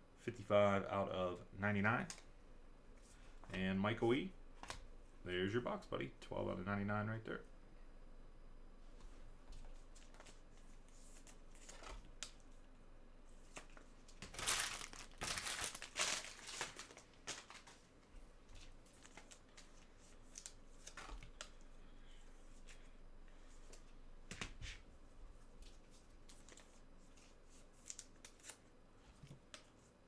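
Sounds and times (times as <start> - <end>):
packaging crinkling and tearing: 14.2 - 17.8.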